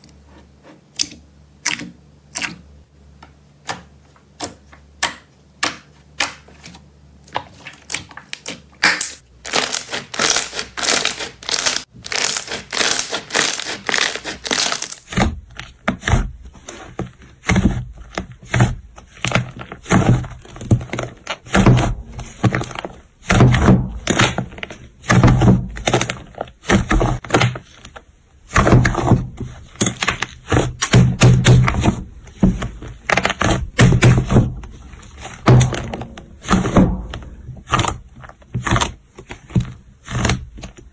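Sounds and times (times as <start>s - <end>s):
crunchy slime squishes: 5.6s - 40.9s
slime clicking and crackling: 7.6s - 15.8s.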